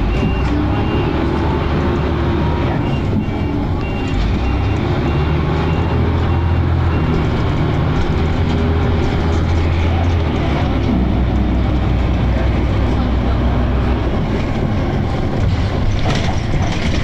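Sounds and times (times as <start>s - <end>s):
bus engine droning: 0.0s - 17.0s
short high beeps: 2.8s - 7.1s.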